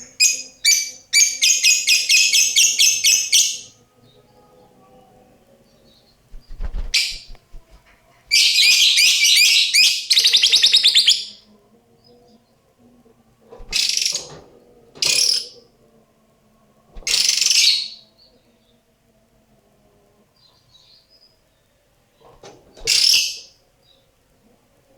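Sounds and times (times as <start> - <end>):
lovebird chattering and screeching: 13.7 - 14.3, 22.8 - 23.5.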